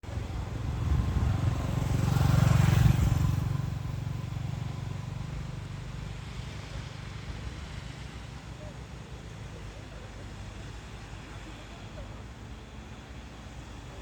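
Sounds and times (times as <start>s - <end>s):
vehicle passing by: 0.0s - 9.7s.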